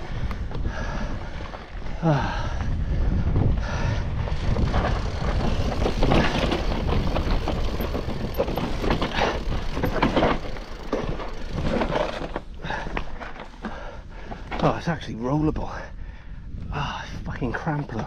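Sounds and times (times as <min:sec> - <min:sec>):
bike rattling: 0:00.0 - 0:15.1
wind and rolling rumble: 0:00.0 - 0:18.0
tyres knocking over rocks: 0:05.0 - 0:13.5.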